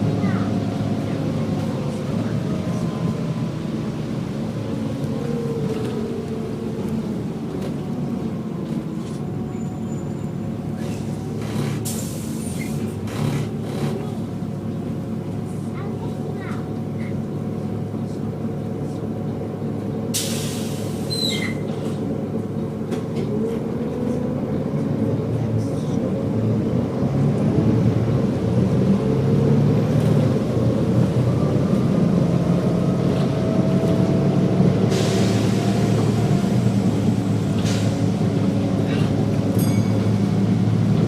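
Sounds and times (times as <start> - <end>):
bus engine running: 0.0 - 41.0
air brake hiss: 20.1 - 21.5, 34.9 - 35.8.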